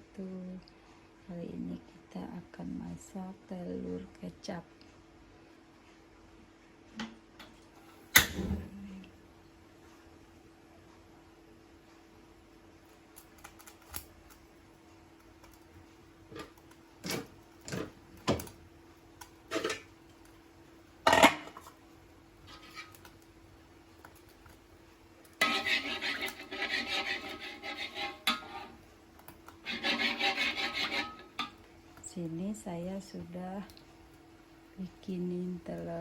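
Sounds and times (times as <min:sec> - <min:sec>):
faint steady hum: 0:00.0 - 0:36.0
dishes knocking and clinking: 0:21.1 - 0:21.7
rapid scraping and rubbing: 0:25.4 - 0:28.8, 0:29.6 - 0:31.4.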